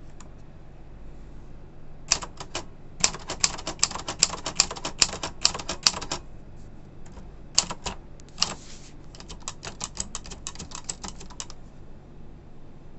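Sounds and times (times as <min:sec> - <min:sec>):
typewriter keys clicking: 0:02.1 - 0:06.2, 0:07.0 - 0:11.6.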